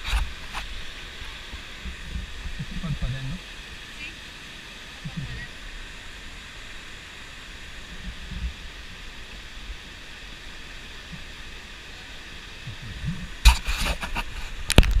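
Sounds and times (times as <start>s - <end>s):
waterfall pouring into river: 0.0s - 15.0s
sharp knocks and crackles: 13.4s - 15.0s.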